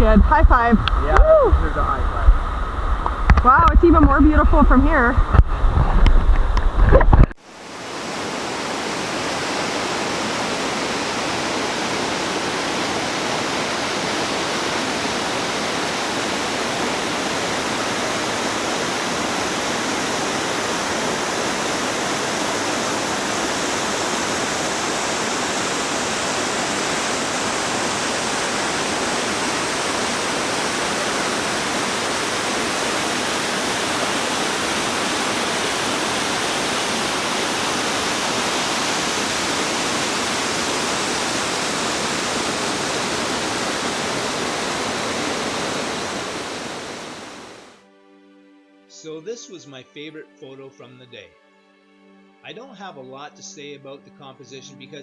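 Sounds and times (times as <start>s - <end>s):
waterfall pouring into pond: 7.6s - 46.9s.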